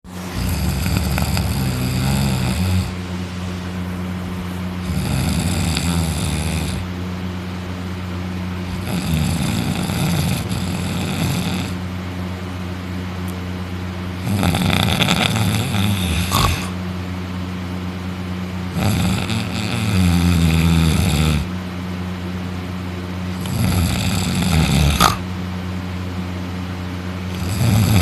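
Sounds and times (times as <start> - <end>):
man snoring loudly: 0.1 - 3.0, 4.8 - 6.9, 8.6 - 11.8, 14.2 - 16.8, 18.7 - 21.5, 23.3 - 25.3, 27.3 - 28.0.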